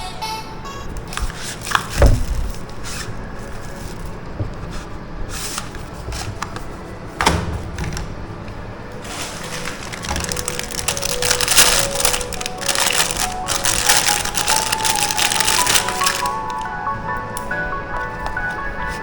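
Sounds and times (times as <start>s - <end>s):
packaging rustling: 1.1s - 4.8s, 9.0s - 16.8s
sharp handling knocks: 1.8s - 2.7s.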